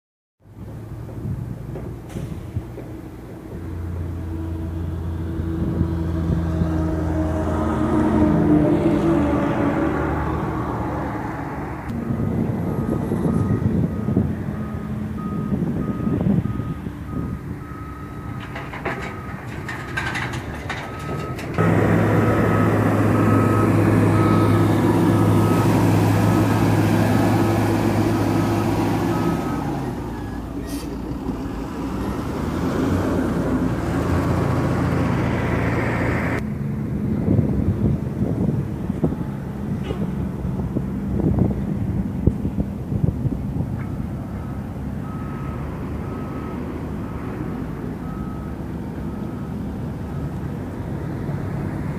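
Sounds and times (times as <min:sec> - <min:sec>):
diesel engine running: 0:00.6 - 0:51.9
reversing alarm beeping: 0:12.0 - 0:26.4, 0:29.0 - 0:30.6, 0:43.9 - 0:50.5.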